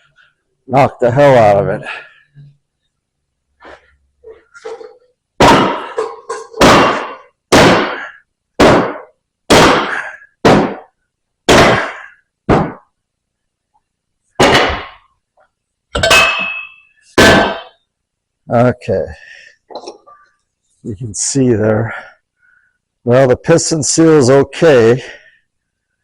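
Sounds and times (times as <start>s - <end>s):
mallet striking metal: 5.4s - 8.0s, 16.0s - 17.8s.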